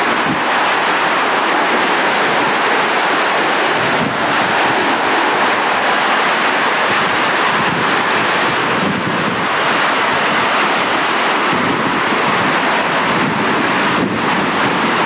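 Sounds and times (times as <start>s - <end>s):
strong wind rushing: 0.0s - 15.0s
wind buffeting microphone: 0.0s - 15.0s.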